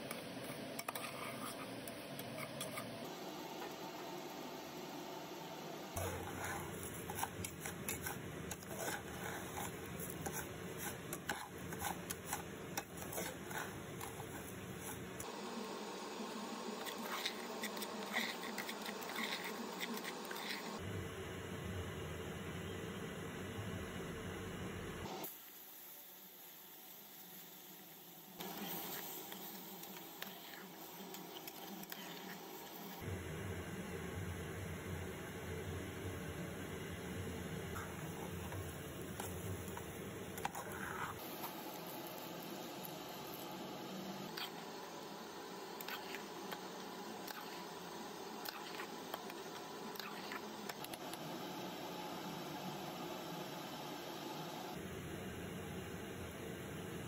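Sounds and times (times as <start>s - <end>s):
faint steady hiss: 0.0s - 57.0s
utensil scraping a cooking pan: 0.4s - 3.1s, 6.0s - 15.3s, 16.8s - 20.8s, 37.8s - 42.2s.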